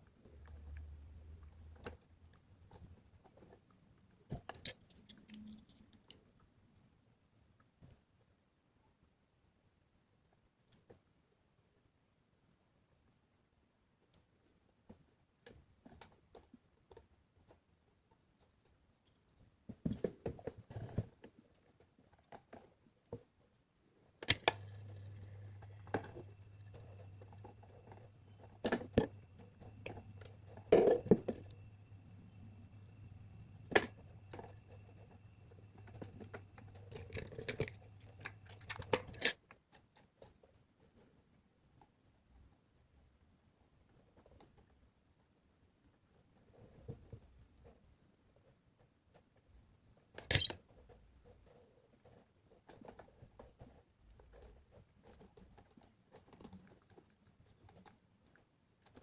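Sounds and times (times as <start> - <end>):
hands clicking and snipping wires: 4.3 - 6.3, 24.2 - 40.4
electrical hum with high whine: 24.3 - 39.2.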